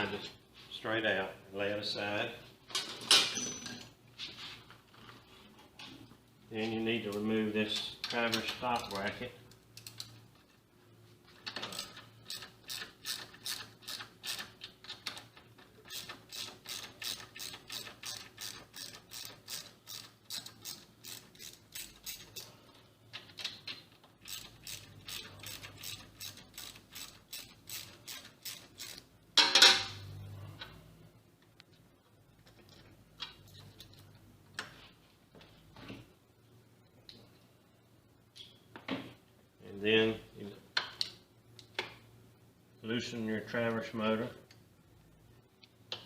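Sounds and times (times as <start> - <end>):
ratchet wrench clicking: 11.7 - 15.2, 15.9 - 22.5, 24.2 - 29.1.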